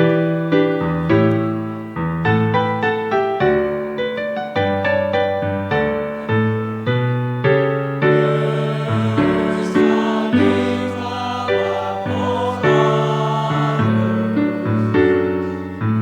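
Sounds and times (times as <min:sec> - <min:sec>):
gospel piano chords: 0:00.0 - 0:16.0
choir singing: 0:08.0 - 0:15.8.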